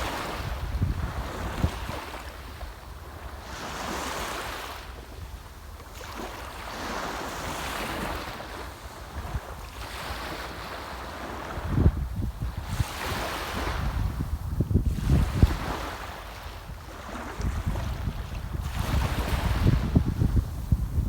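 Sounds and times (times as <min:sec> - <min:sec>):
wind buffeting microphone: 0:00.0 - 0:02.0, 0:11.5 - 0:16.0, 0:16.7 - 0:21.0.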